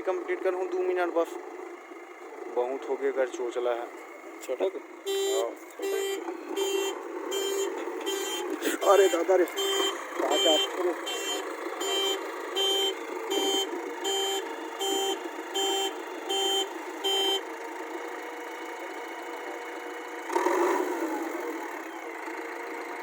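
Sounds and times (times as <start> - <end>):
engine running steadily: 0.0 - 23.0
reversing alarm beeping: 5.1 - 17.5.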